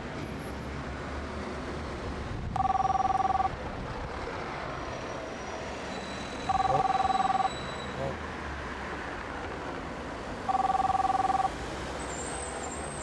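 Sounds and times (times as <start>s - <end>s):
telephone ringing: 2.6s - 3.6s, 6.5s - 7.6s, 10.5s - 11.6s.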